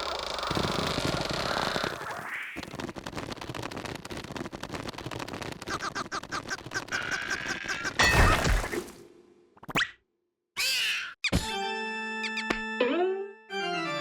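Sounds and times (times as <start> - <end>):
high squeaky chirps: 12.2 - 12.6.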